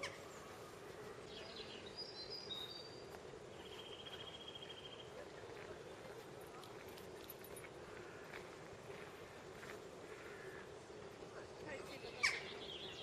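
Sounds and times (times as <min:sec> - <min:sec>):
small birds chirping: 0:00.0 - 0:06.3, 0:09.0 - 0:13.0.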